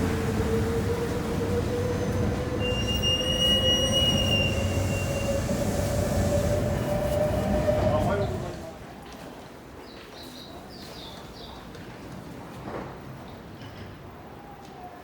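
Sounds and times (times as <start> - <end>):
high clear squeal: 0.0 - 8.7
train traction motor whine: 0.0 - 8.7.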